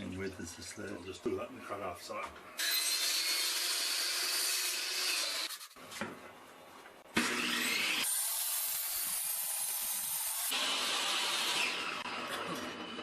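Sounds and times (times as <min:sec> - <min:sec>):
electric saw cutting plywood: 0:02.6 - 0:05.7, 0:07.1 - 0:13.0.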